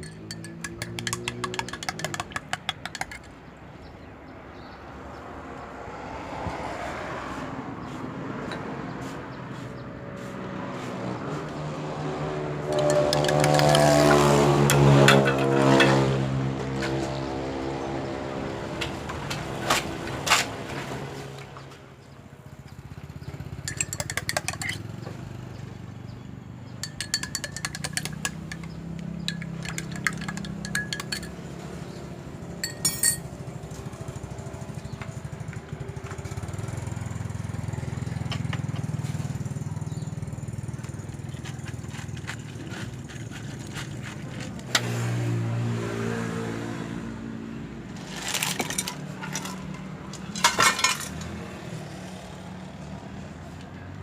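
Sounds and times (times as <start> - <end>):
rapid clinking and rattling: 0.0 - 3.3, 12.7 - 14.1, 23.6 - 24.8, 26.8 - 31.4, 32.6 - 33.3, 48.0 - 51.4.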